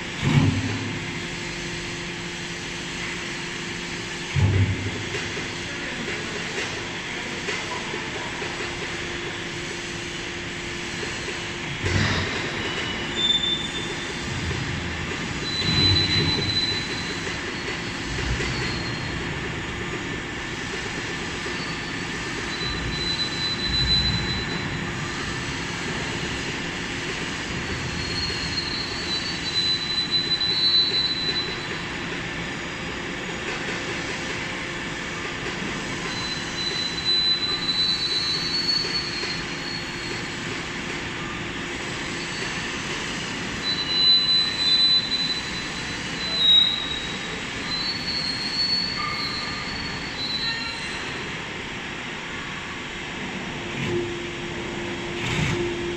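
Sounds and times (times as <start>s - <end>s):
industrial machinery noise: 0.0s - 55.9s
high-pitched metallic squeals: 12.3s - 14.3s, 15.3s - 19.2s, 21.5s - 26.2s, 27.7s - 31.9s, 36.0s - 40.4s, 43.6s - 51.4s.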